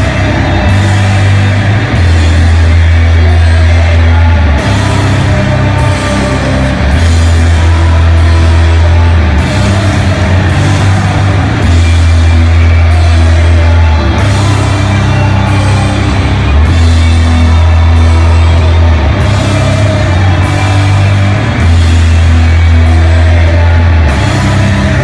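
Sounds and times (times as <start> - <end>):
distorted guitar and bass chords: 0.0 - 25.0
drums and cymbal crashes: 0.0 - 25.0.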